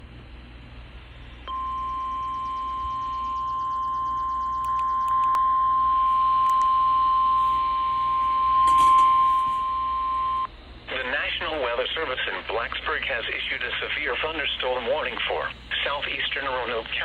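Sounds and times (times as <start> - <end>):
steady alarm tone: 1.5 - 10.5.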